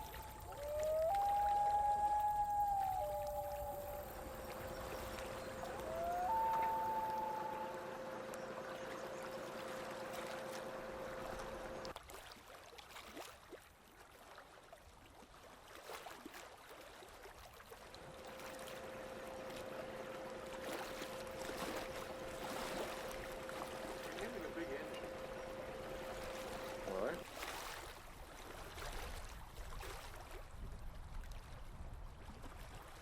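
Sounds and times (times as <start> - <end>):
steady hum: 0.0 - 11.9, 18.0 - 27.2
water lapping against boat hull: 0.0 - 33.0.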